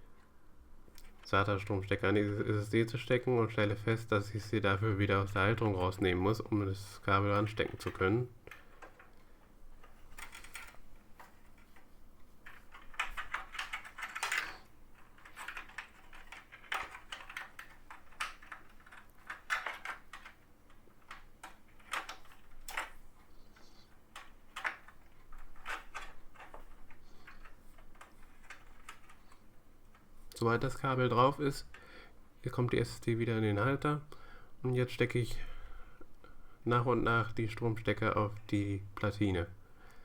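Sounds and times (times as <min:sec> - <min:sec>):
computer parts clicking and scraping: 0:07.5 - 0:30.1.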